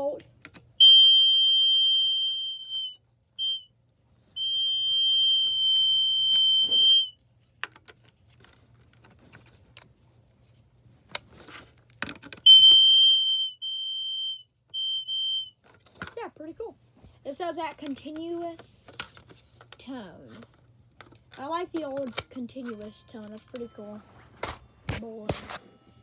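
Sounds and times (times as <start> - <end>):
clicks and handling noise: 0.2 - 0.7, 6.2 - 12.8, 15.6 - 16.2, 17.6 - 25.7
smoke alarm test tone: 0.8 - 3.7, 4.4 - 7.2, 12.5 - 15.6.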